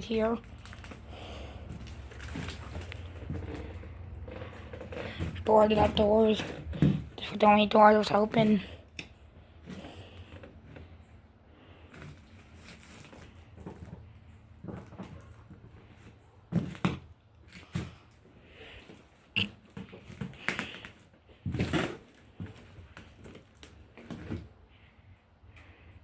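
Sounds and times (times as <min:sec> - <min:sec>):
footsteps on debris and boards: 0:01.2 - 0:07.3.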